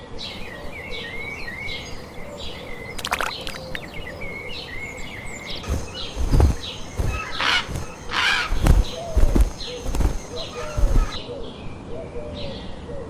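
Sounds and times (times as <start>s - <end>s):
birds chirping: 0.0s - 11.6s
low thuds: 5.6s - 11.2s
rustling noise: 5.6s - 11.2s.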